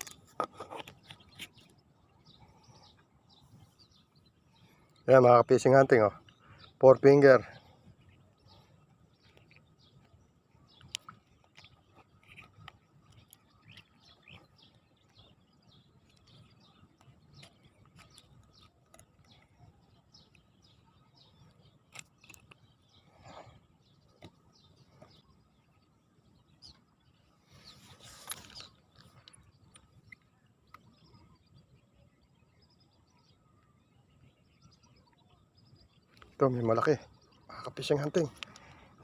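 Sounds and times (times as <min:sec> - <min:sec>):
faint bird chirps: 0:00.0 - 0:39.0.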